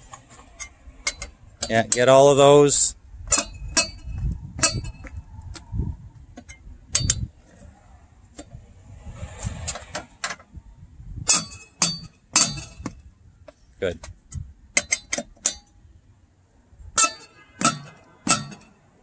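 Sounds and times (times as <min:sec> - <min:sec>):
wrench clinking on lug nuts: 0:00.5 - 0:02.4, 0:03.2 - 0:05.2, 0:11.3 - 0:13.0, 0:14.3 - 0:15.8, 0:17.0 - 0:18.8.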